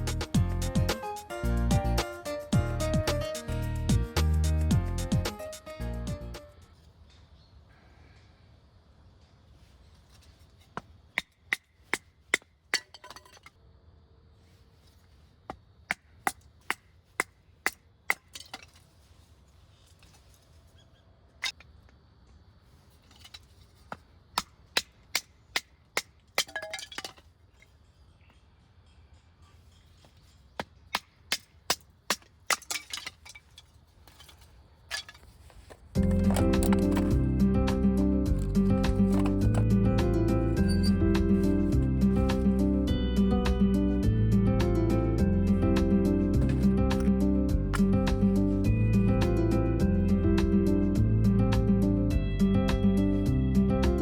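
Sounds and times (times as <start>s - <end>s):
background music: 0.0s - 6.7s, 36.0s - 54.0s
wooden chopping strikes: 35.6s - 37.2s, 38.3s - 39.8s, 46.4s - 48.2s.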